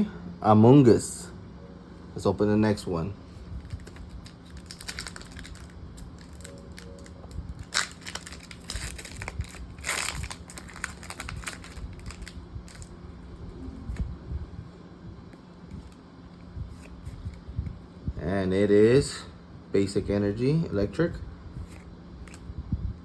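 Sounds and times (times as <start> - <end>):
faint low hum: 0.0 - 23.0
foil wrapper crinkling and tearing: 3.6 - 13.0
trading cards being shuffled: 3.6 - 14.0, 15.3 - 17.4, 21.6 - 22.4.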